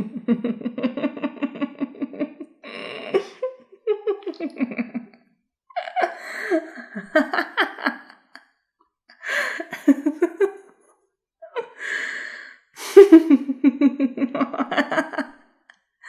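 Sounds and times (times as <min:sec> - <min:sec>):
woman laughing maniacally: 0:00.0 - 0:05.2, 0:05.8 - 0:08.4, 0:09.3 - 0:10.6, 0:12.8 - 0:15.3
breathy in-breath: 0:09.2 - 0:09.7, 0:11.8 - 0:12.7.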